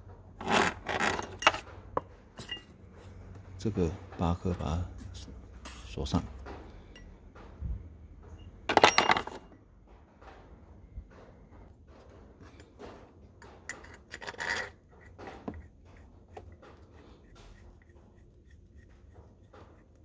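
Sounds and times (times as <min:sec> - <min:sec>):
metallic scrapes and clicks of bolts: 0:00.4 - 0:01.7, 0:13.6 - 0:18.0.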